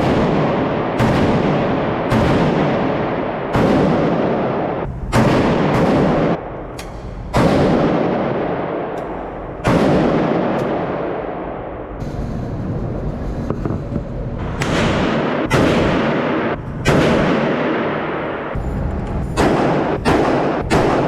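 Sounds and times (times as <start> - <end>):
loud gunshots with ringing decay: 0.0 - 6.4, 7.2 - 13.4, 14.4 - 18.6, 19.2 - 21.0
fainter sharp cracks: 13.4 - 21.0.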